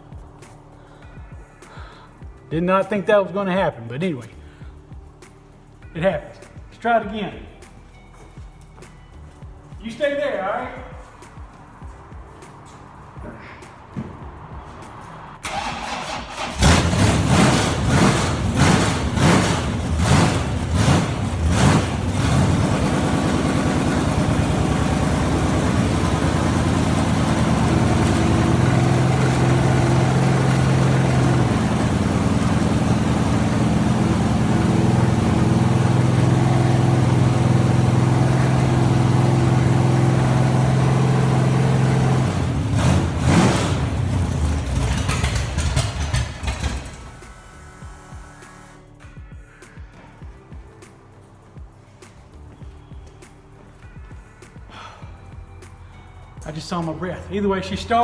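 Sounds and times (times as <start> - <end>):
car engine revving and idling: 14.4 - 48.8.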